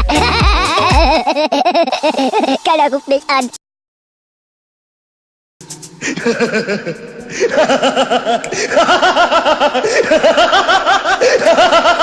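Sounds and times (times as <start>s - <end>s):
recorded voice laughing: 0.0s - 2.7s, 6.1s - 12.0s.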